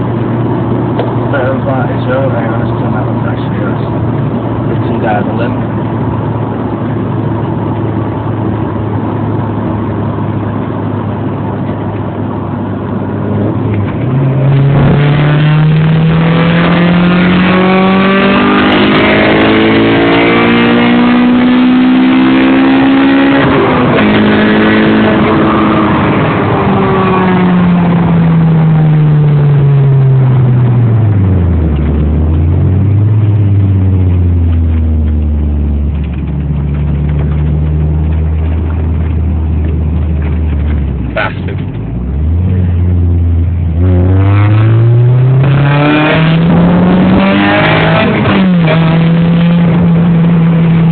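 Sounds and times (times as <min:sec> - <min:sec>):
engine idling and revving: 0:00.0 - 0:50.9.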